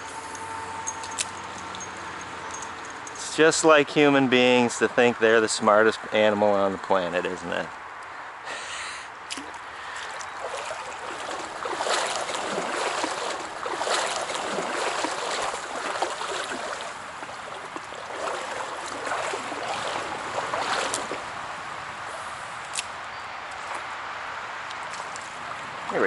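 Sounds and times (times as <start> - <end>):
stream water rushing and splashing: 9.1 - 26.0.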